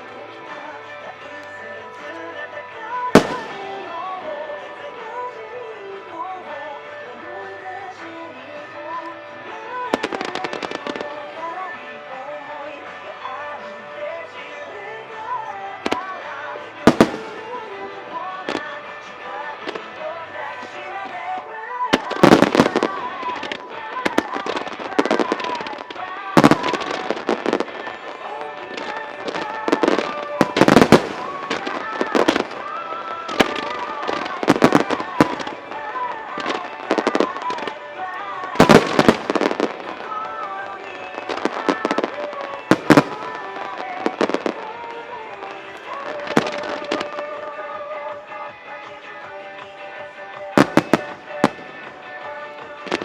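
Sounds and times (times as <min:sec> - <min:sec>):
fireworks crackling: 0:00.0 - 0:53.0
music: 0:00.0 - 0:53.0
firework shells bursting: 0:03.1 - 0:04.3, 0:16.8 - 0:18.9, 0:22.0 - 0:47.3, 0:50.6 - 0:51.9.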